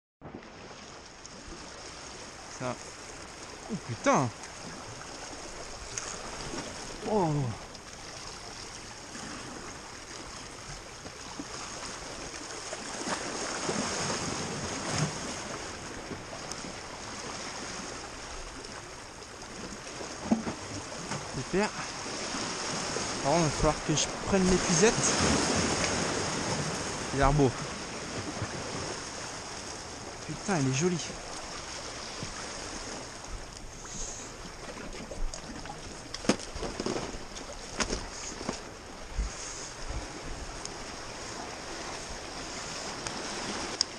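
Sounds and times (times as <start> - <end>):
sea waves washing on shore: 0.2 - 43.9
wind: 0.2 - 43.9
wind on microphone: 38.0 - 43.9.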